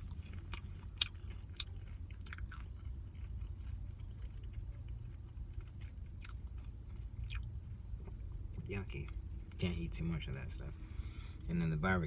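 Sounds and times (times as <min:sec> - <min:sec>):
person chewing food: 0:00.0 - 0:09.6
steady low hum: 0:00.0 - 0:12.0.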